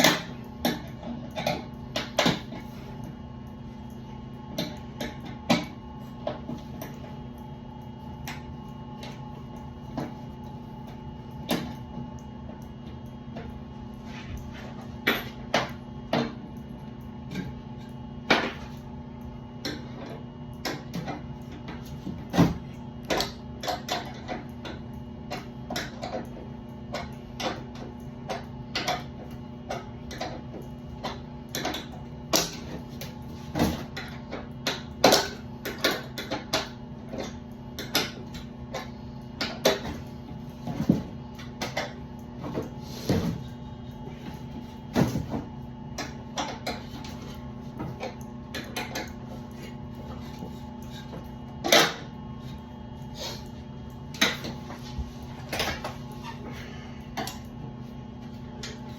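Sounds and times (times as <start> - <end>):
steady low hum: 0.0 - 58.9.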